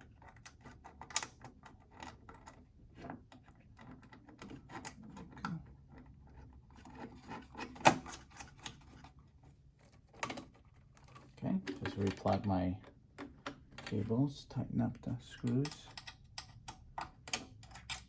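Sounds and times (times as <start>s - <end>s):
light clicks and taps of tools: 15.0s - 18.0s.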